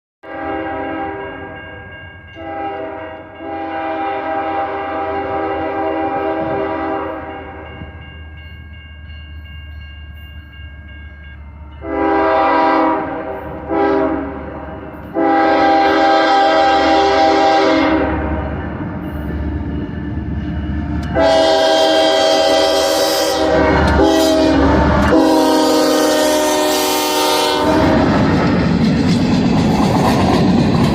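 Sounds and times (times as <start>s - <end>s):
locomotive air horn blasts: 0.2s - 1.6s, 2.4s - 7.7s, 11.8s - 18.4s, 21.1s - 28.3s
low locomotive rumble: 2.5s - 30.9s.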